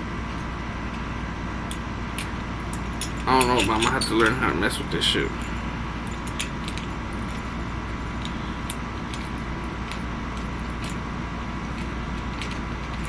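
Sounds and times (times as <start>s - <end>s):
low background hum: 0.0s - 13.0s
light metallic clicks of tools: 1.7s - 4.5s.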